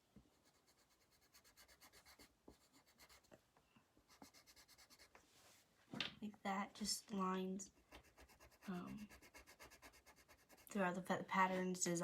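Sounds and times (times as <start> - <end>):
pencil scratching on paper: 0.3 - 3.3, 4.1 - 5.2, 7.7 - 11.6.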